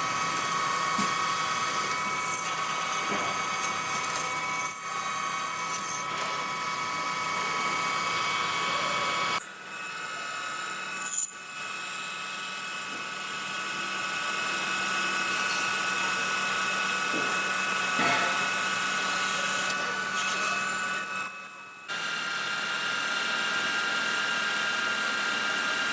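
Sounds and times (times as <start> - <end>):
metal lathe whining: 0.0 - 25.9.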